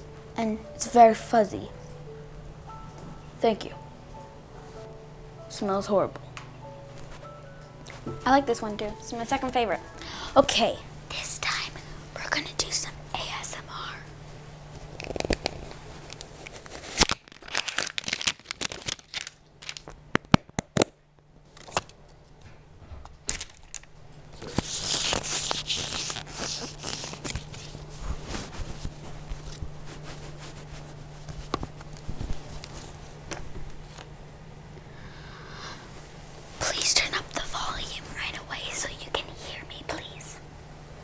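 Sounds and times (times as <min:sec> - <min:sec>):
packaging crinkling and tearing: 0:14.8 - 0:20.9, 0:23.2 - 0:34.0.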